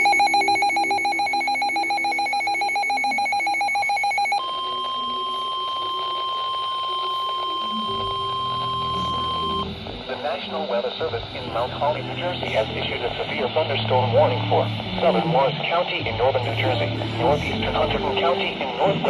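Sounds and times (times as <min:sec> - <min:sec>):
steady warning alarm tone: 0:00.0 - 0:09.8
rapidly pulsing electronic beep: 0:00.0 - 0:10.2.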